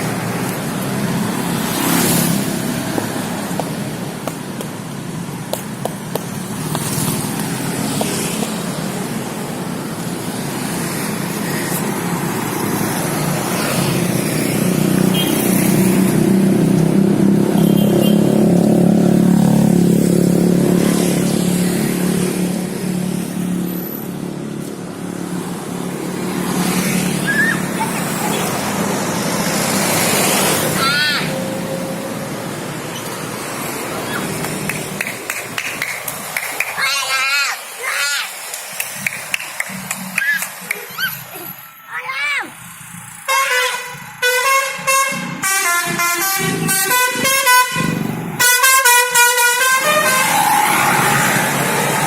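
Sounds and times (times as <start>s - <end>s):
vehicle passing close by: 0.0s - 3.7s, 10.2s - 36.6s, 42.6s - 52.0s
bus engine rushing: 0.0s - 52.0s
multi-tone bus air horn tune: 43.2s - 50.5s.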